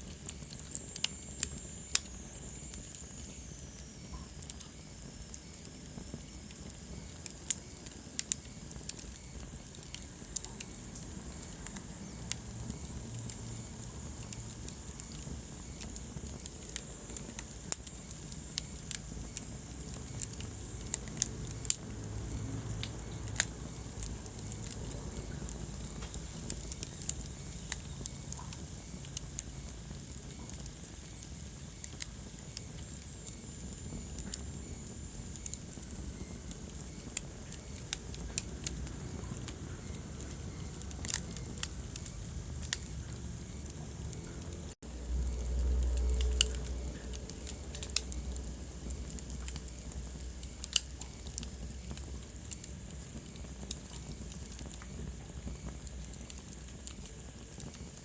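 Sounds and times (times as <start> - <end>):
crackles and pops of logs: 0.0 - 58.0
fire rumbling in fireplace: 0.0 - 58.0.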